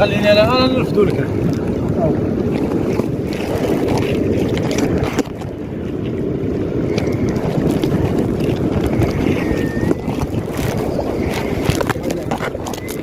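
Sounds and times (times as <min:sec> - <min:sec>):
water sloshing: 0:00.0 - 0:13.0
wind buffeting microphone: 0:00.0 - 0:13.0
faint short squeak: 0:09.4 - 0:10.1.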